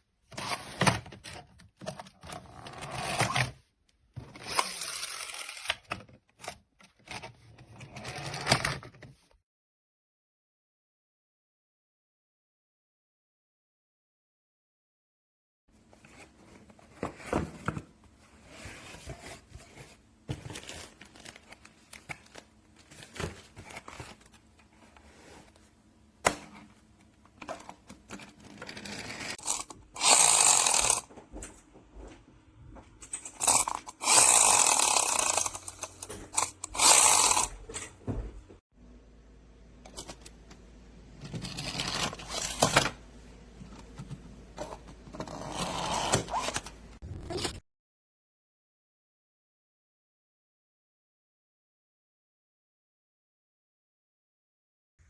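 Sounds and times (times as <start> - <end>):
toy car mechanism whirring: 4.3 - 6.6, 28.6 - 31.1, 33.2 - 37.5, 41.3 - 42.8, 45.1 - 47.5.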